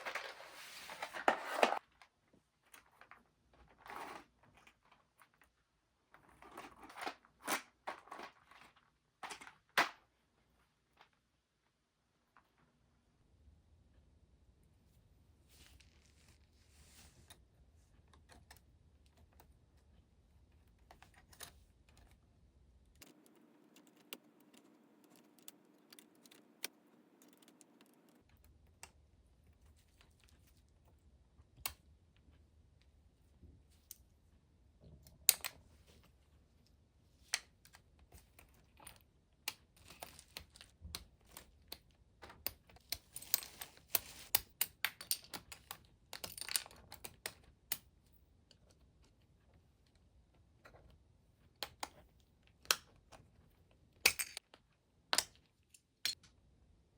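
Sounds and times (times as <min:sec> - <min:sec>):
keyboard typing: 0:23.0 - 0:28.2.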